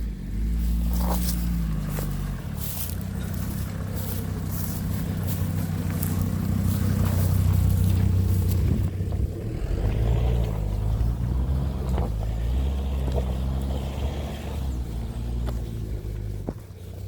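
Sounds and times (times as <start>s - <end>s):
vehicle engine running: 0.0s - 17.0s
crackles of steps or brush: 0.4s - 8.9s, 13.0s - 17.0s.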